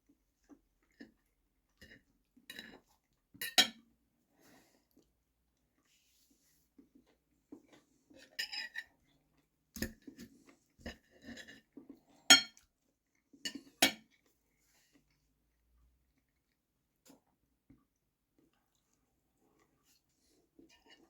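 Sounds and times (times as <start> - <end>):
cutlery and dishes clinking: 3.4 - 3.8, 8.2 - 8.9, 12.3 - 12.6.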